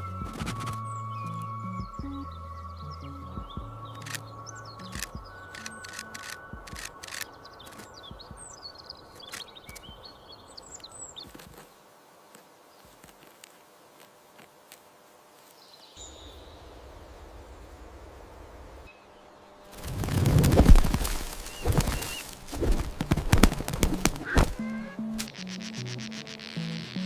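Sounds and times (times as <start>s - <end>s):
outdoor ambience: 0.0s - 27.0s
high bird chirps: 0.6s - 11.3s, 24.2s - 27.0s.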